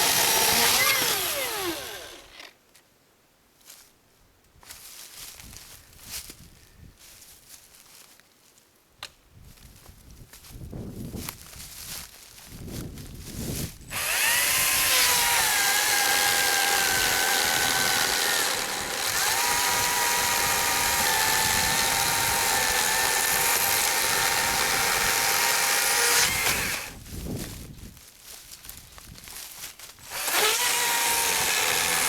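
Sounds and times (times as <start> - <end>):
electric chainsaw whining: 0.0 - 2.5, 13.9 - 27.0, 30.0 - 32.0.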